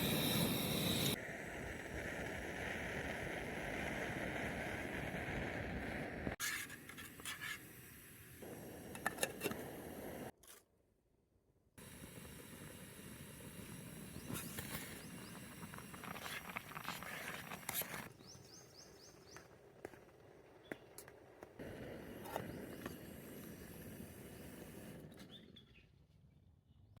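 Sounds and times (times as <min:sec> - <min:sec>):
steady hiss: 0:00.0 - 0:10.3, 0:11.8 - 0:18.1, 0:21.6 - 0:25.1.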